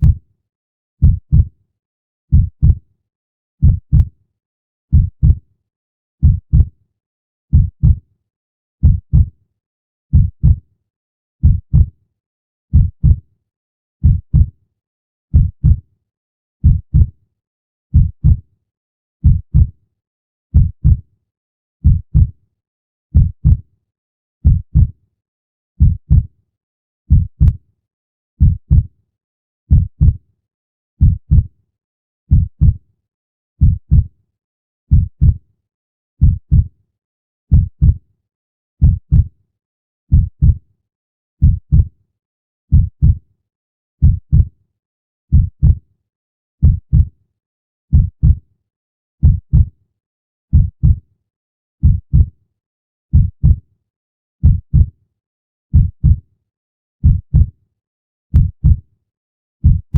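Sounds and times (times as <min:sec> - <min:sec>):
heartbeat thumps: 0:01.0 - 0:01.5, 0:02.3 - 0:02.8, 0:03.6 - 0:04.1, 0:04.9 - 0:05.4, 0:06.2 - 0:06.7, 0:07.5 - 0:08.0, 0:08.8 - 0:09.3, 0:10.1 - 0:10.6, 0:11.4 - 0:11.9, 0:12.7 - 0:13.2, 0:14.0 - 0:14.5, 0:15.3 - 0:15.8, 0:16.6 - 0:17.1, 0:19.2 - 0:19.7, 0:20.6 - 0:21.0, 0:21.8 - 0:22.3, 0:23.2 - 0:23.6, 0:24.4 - 0:24.9, 0:25.8 - 0:26.2, 0:27.1 - 0:27.6, 0:28.4 - 0:28.9, 0:29.7 - 0:30.2, 0:31.0 - 0:31.5, 0:32.3 - 0:32.8, 0:33.6 - 0:34.1, 0:34.9 - 0:35.4, 0:36.2 - 0:36.6, 0:37.5 - 0:38.0, 0:38.8 - 0:39.2, 0:40.1 - 0:40.6, 0:42.7 - 0:43.2, 0:44.0 - 0:44.5, 0:45.3 - 0:45.8, 0:46.6 - 0:47.1, 0:47.9 - 0:48.4, 0:49.2 - 0:49.7, 0:51.8 - 0:52.3, 0:53.1 - 0:53.6, 0:54.4 - 0:54.9, 0:55.7 - 0:56.2, 0:57.0 - 0:57.5, 0:58.4 - 0:58.8, 0:59.6 - 0:59.9.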